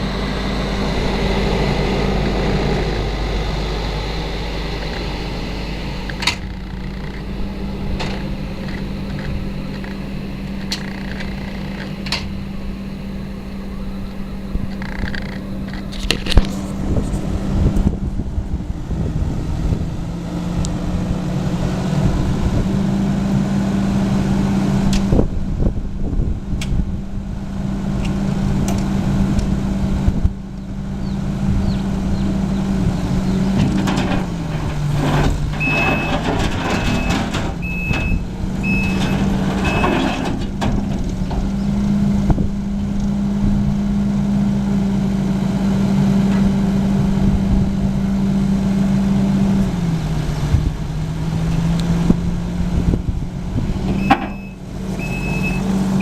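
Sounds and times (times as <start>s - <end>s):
diesel engine running: 0.0s - 56.0s
backup alarm beeps: 35.6s - 40.0s, 54.0s - 56.0s.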